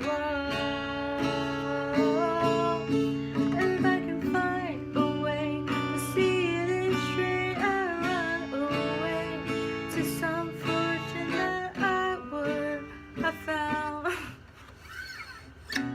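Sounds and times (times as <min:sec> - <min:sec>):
woman singing: 0:00.0 - 0:14.4
acoustic guitar strumming: 0:00.0 - 0:15.9.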